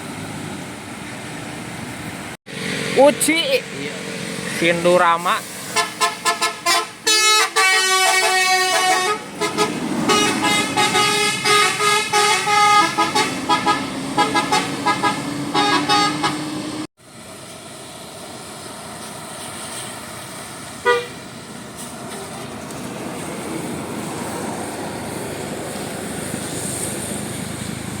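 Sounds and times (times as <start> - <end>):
vehicle engine and road noise: 0.0 - 28.0
musical bus horn tune: 5.7 - 16.9, 20.8 - 21.2.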